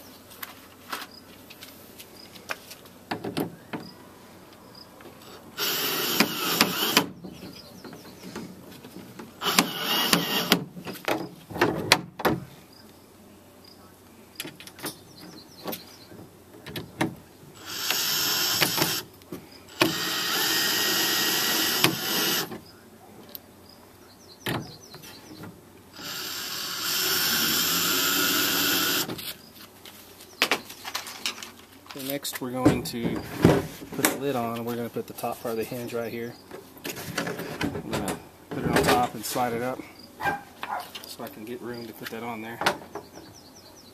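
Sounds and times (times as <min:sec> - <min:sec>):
power drill running: 0:05.6 - 0:07.1, 0:09.4 - 0:10.6, 0:17.6 - 0:19.1, 0:19.7 - 0:22.5, 0:26.0 - 0:29.1.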